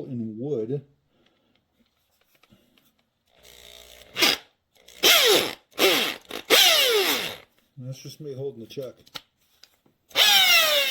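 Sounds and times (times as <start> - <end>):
hammer drill motor whine: 3.3 - 7.4, 10.1 - 10.9.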